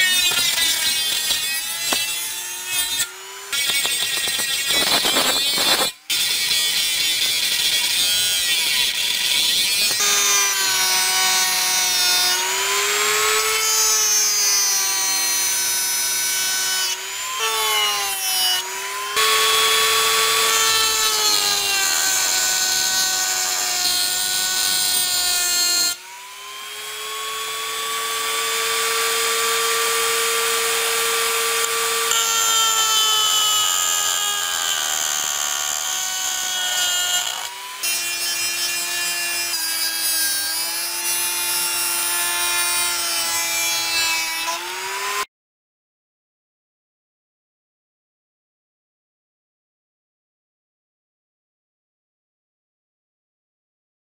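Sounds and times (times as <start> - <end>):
rotary tool motor whine: 0.0 - 39.5
rasping cutting noise: 0.0 - 45.3.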